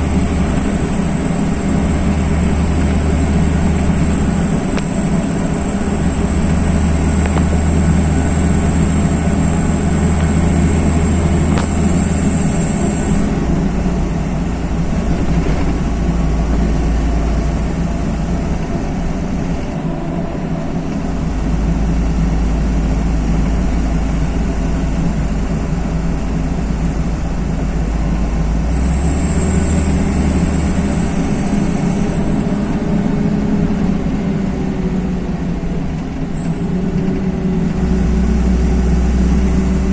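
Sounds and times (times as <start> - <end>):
diesel engine drone: 0.0 - 39.9
road noise: 0.0 - 39.9.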